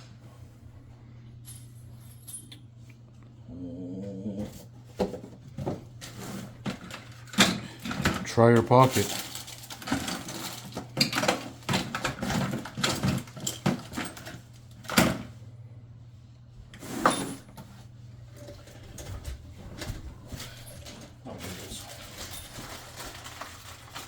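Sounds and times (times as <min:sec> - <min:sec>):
rummaging through small parts: 0:05.6 - 0:15.2, 0:19.8 - 0:24.0.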